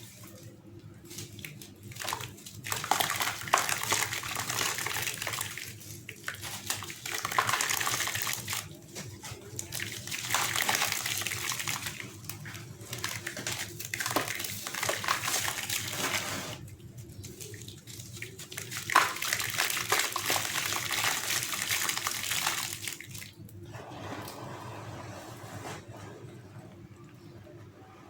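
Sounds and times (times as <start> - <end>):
sand-cement chunks crumbling in water: 0.1 - 23.1.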